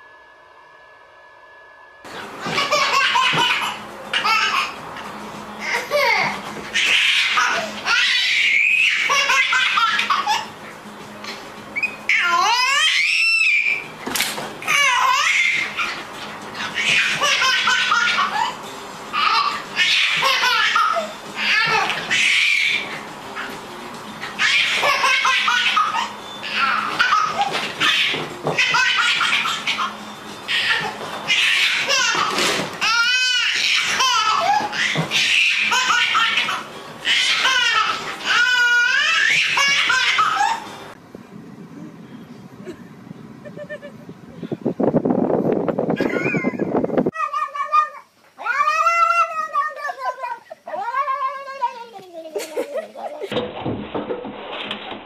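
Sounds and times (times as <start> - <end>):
small child laughing: 2.4 - 4.8, 7.0 - 10.5, 43.4 - 44.1, 46.0 - 47.2, 49.4 - 53.4
high-pitched laughter: 43.4 - 44.2, 46.0 - 47.0, 49.2 - 53.4.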